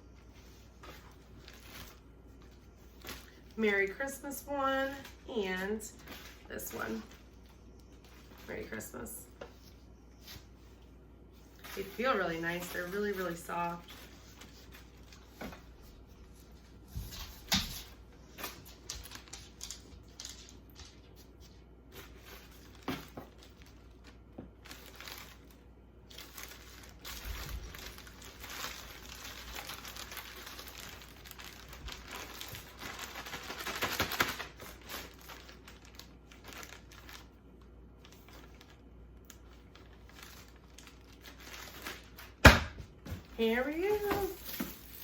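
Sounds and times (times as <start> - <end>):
plastic packaging crinkling: 0.8 - 4.0, 11.3 - 15.4, 18.3 - 21.1, 21.9 - 42.4, 43.5 - 45.0.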